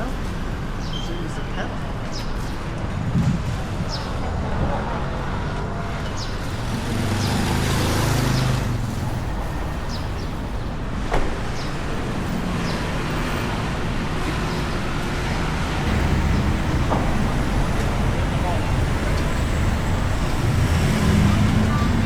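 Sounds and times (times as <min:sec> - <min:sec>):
rumble of passing cars: 0:00.0 - 0:22.0
vehicle passing close: 0:03.0 - 0:10.9, 0:15.8 - 0:22.0.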